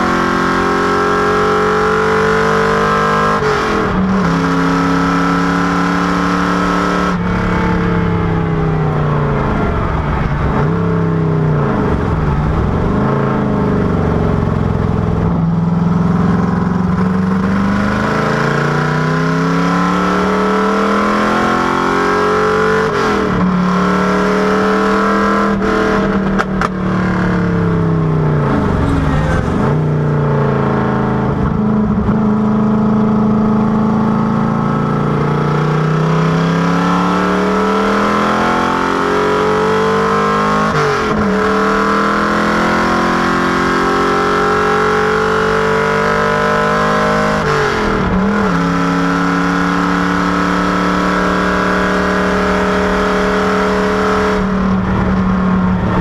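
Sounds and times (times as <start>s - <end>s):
engine revving hard: 17.0s - 32.2s, 34.2s - 55.1s.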